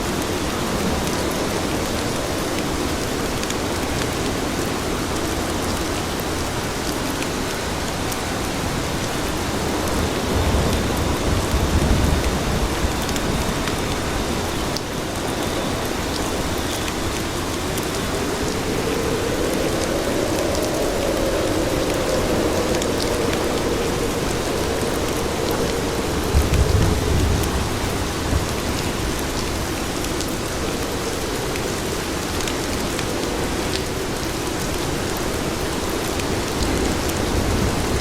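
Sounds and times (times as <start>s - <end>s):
rain on pavement: 0.0s - 38.0s
low rumble: 17.1s - 29.7s.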